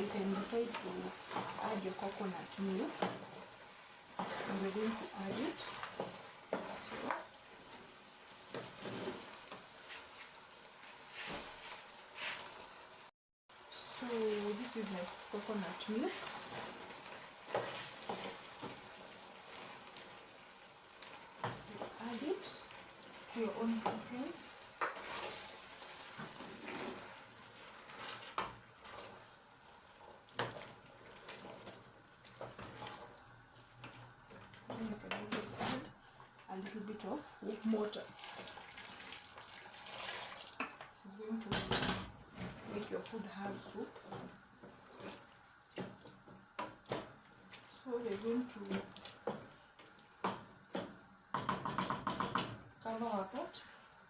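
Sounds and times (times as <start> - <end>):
food sizzling in a pot: 0.0 - 54.0
spoon scraping and knocking pot: 50.2 - 52.6.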